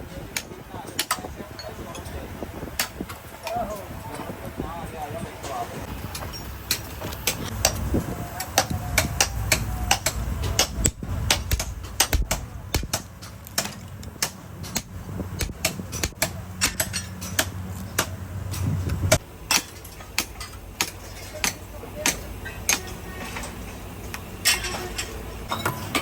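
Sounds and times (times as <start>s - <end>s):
low rumble: 0.0s - 20.0s
metal knocks and clanks: 5.2s - 23.8s.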